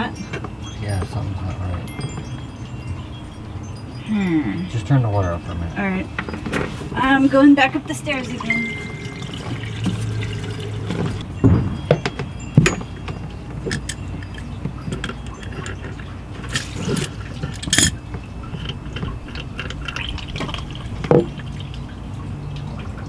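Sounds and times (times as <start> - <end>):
water running and dripping: 6.2 - 11.3, 13.8 - 23.0
low steady hum: 13.3 - 23.0.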